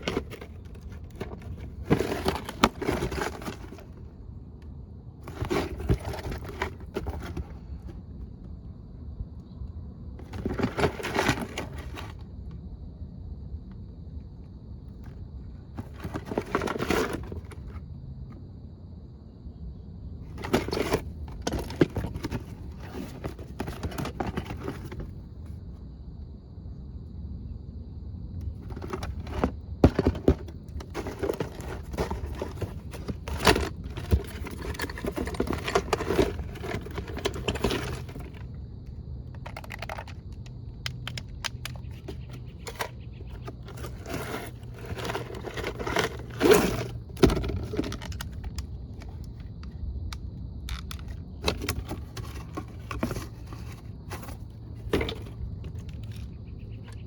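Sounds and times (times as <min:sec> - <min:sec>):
scraping and rattling: 0:00.0 - 0:04.1, 0:05.2 - 0:08.0, 0:10.2 - 0:12.2, 0:15.8 - 0:17.8, 0:20.3 - 0:25.2, 0:28.5 - 0:38.6, 0:39.3 - 0:40.3, 0:40.9 - 0:49.8, 0:50.7 - 0:57.0.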